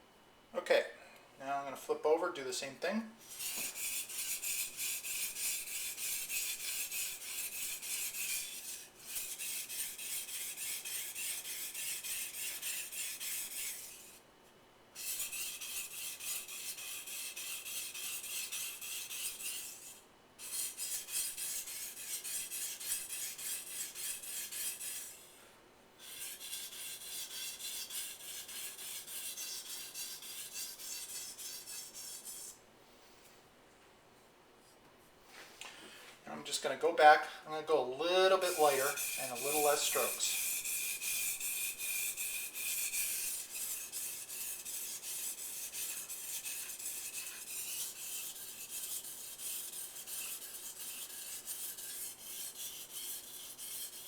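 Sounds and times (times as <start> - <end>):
knife scraping on whetstone: 3.3 - 14.2, 15.0 - 25.3, 26.0 - 32.6, 38.2 - 54.0.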